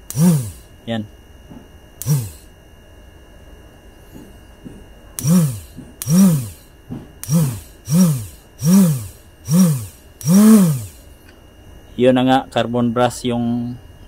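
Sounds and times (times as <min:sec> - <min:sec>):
starter motor whine: 0:00.0 - 0:00.7, 0:02.0 - 0:02.5, 0:05.2 - 0:11.1.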